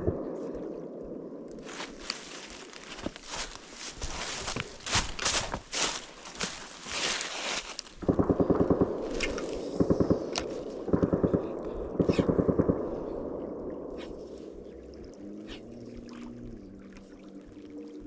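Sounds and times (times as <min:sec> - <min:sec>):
crunching footsteps: 0:01.5 - 0:11.1.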